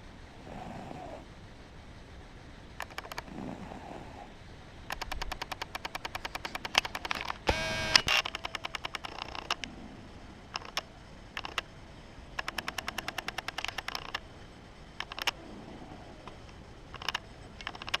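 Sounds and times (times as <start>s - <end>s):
cat snoring with clicks: 0.4s - 1.3s, 2.9s - 4.3s, 9.2s - 10.4s, 12.4s - 14.0s.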